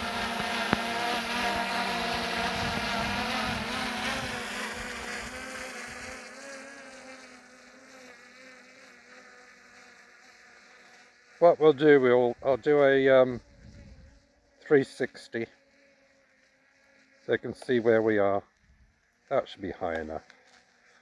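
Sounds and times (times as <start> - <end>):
drone propellers buzzing: 0.0 - 7.1.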